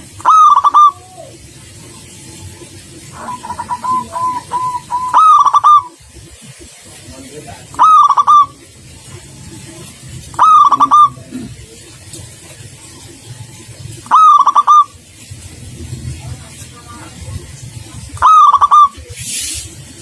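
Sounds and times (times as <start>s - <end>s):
zebra dove cooing: 0.2s - 1.4s, 3.1s - 6.0s, 7.7s - 8.6s, 10.4s - 11.6s, 14.1s - 14.9s, 18.2s - 19.0s.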